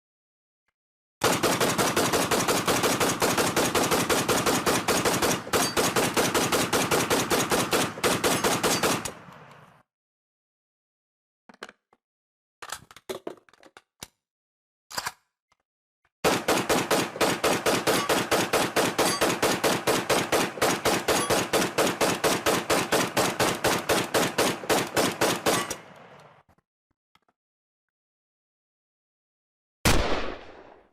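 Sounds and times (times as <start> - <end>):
rifle automatic fire: 1.2 - 9.5, 16.2 - 26.3, 29.9 - 30.9.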